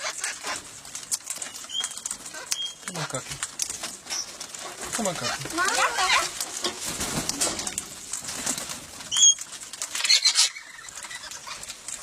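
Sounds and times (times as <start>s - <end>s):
parrots calling: 0.0s - 0.6s, 1.4s - 3.2s, 5.1s - 6.4s, 10.0s - 11.8s
parrot squawks: 5.2s - 6.3s, 10.0s - 11.6s.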